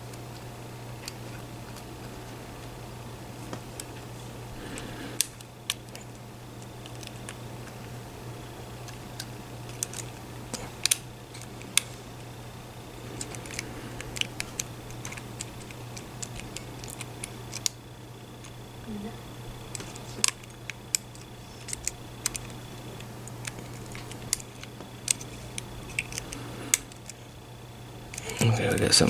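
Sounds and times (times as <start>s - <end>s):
steady low hum: 0.0s - 29.0s
lock picks clicking in a lock: 13.2s - 17.8s, 19.7s - 27.2s.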